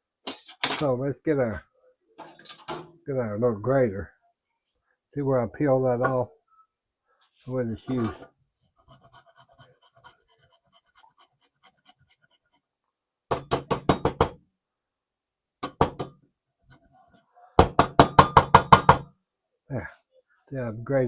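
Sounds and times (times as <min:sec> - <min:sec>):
ginger scraping on a grater: 0:08.8 - 0:12.6.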